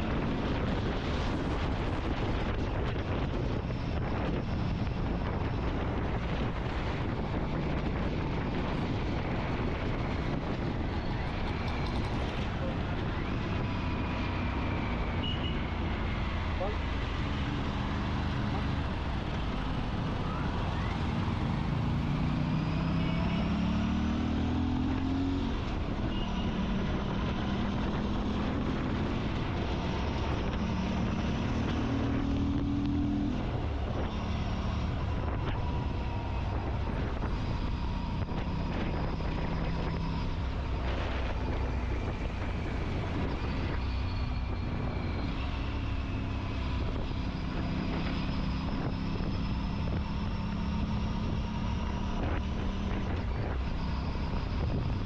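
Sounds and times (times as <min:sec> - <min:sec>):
wind and road noise: 0:00.0 - 0:55.0
motorcycle engine revving: 0:11.4 - 0:55.0.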